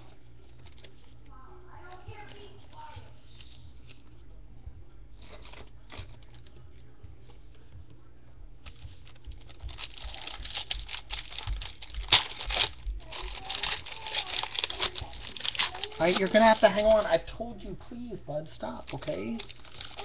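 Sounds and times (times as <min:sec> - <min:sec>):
foil wrapper crinkling and tearing: 0:08.7 - 0:17.2, 0:18.6 - 0:20.0.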